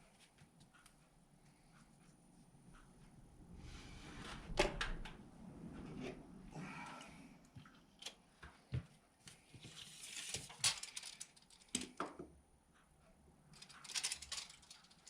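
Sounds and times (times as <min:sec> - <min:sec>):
tools clicking and knocking: 0:10.5 - 0:12.4, 0:13.5 - 0:15.0.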